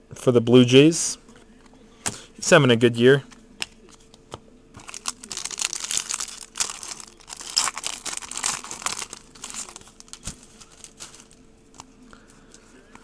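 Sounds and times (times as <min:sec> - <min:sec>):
foil wrapper crinkling and tearing: 0:04.8 - 0:11.9.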